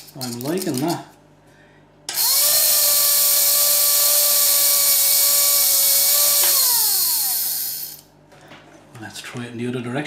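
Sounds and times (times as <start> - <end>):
small motor whining: 2.1 - 8.0.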